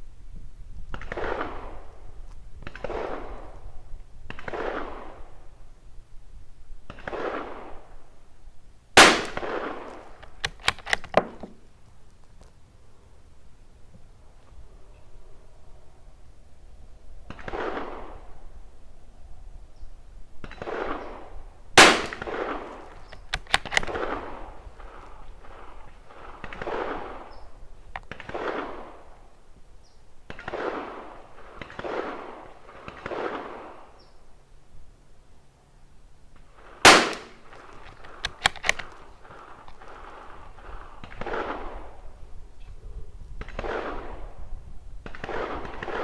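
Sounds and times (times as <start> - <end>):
rifle shots: 9.0 - 11.6, 21.8 - 24.2, 36.9 - 38.9.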